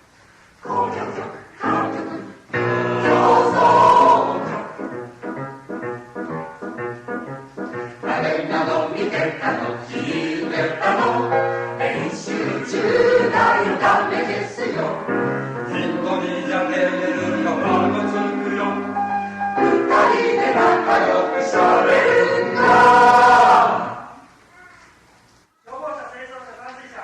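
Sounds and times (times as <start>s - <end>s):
piano: 0.0s - 24.8s
mixed choir singing: 0.6s - 4.8s, 8.0s - 24.2s.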